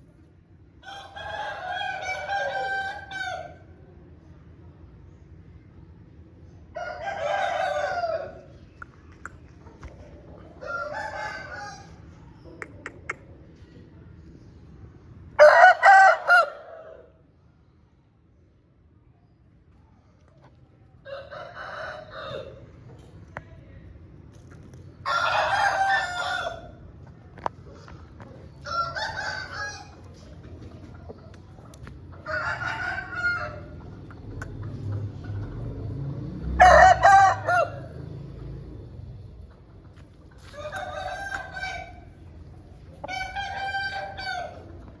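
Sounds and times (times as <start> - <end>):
rooster crowing: 0.8 - 3.6, 6.7 - 8.5, 10.6 - 11.9, 15.4 - 17.1, 21.1 - 22.6, 25.0 - 26.8, 28.6 - 30.0, 32.2 - 33.8, 36.5 - 38.0, 40.4 - 42.1, 43.0 - 44.7.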